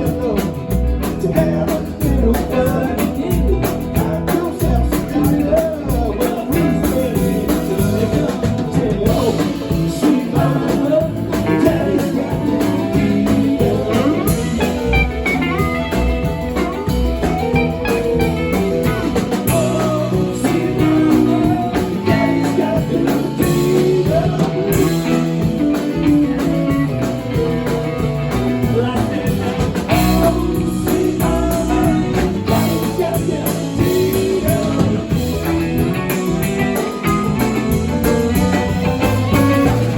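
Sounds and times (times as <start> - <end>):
drums: 0.0 - 39.9
electric guitar: 0.0 - 39.9
person singing: 0.0 - 39.9.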